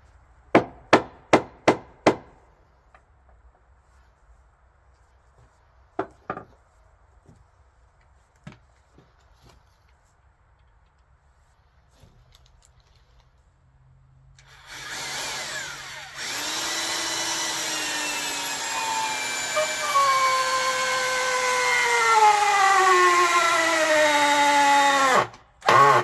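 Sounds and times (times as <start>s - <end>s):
drill driving screw into wood: 14.4s - 26.0s.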